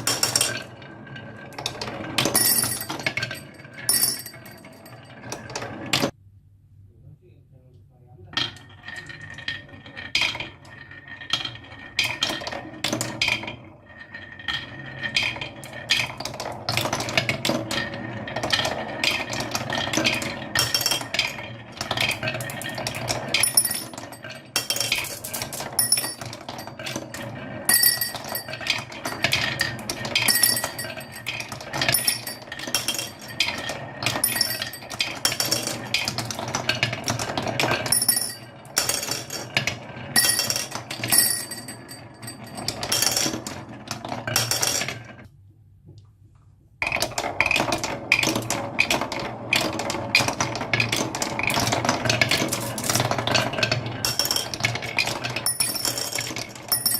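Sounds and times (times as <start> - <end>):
marbles rolling on wooden track: 0.0 - 6.2, 8.3 - 45.3, 46.8 - 56.9
marbles clicking and clinking: 1.6 - 5.0, 14.2 - 39.6, 40.2 - 43.5, 49.6 - 56.9.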